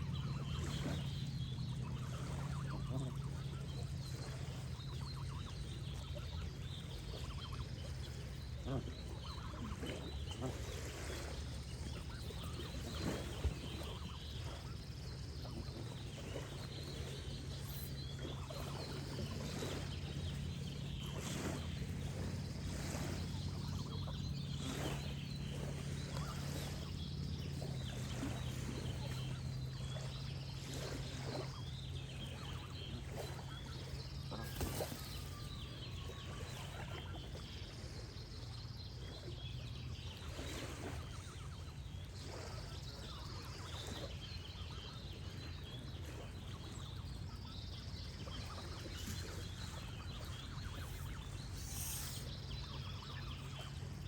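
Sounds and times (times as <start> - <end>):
birdsong: 0.0 - 54.0
gentle water flow: 0.0 - 54.0
geese honking: 1.8 - 14.7.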